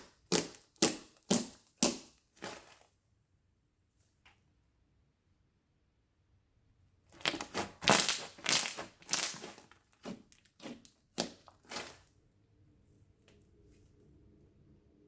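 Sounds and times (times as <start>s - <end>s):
slime squishing and popping: 0.0s - 2.8s, 7.1s - 12.0s.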